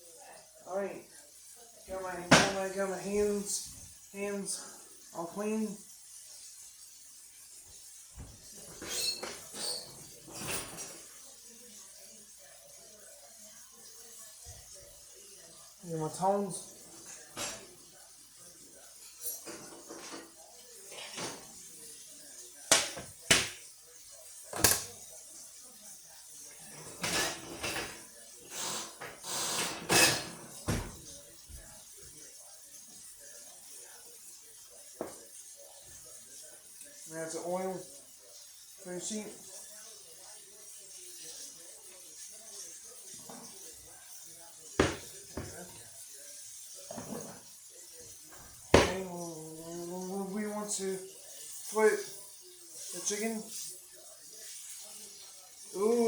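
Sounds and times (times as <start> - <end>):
faint steady background noise: 0.0 - 56.0
kitchen utensils clattering: 1.9 - 3.8, 8.1 - 11.6, 16.2 - 17.9, 19.0 - 21.9, 24.4 - 25.2, 26.4 - 31.7, 44.7 - 45.9, 46.8 - 49.2
kitchen scraping and rustling: 8.2 - 11.1, 26.7 - 31.2.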